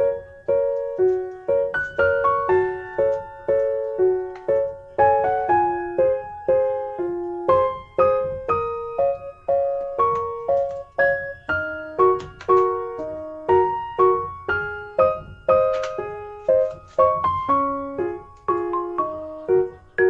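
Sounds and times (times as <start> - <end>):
soft piano melody: 0.0 - 20.0.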